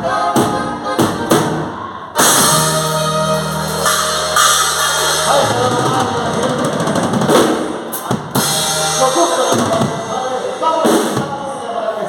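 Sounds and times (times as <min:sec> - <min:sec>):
instrumental melody: 0:00.0 - 0:06.5
bass line: 0:00.0 - 0:11.5
drum kit with cymbals: 0:00.3 - 0:11.7.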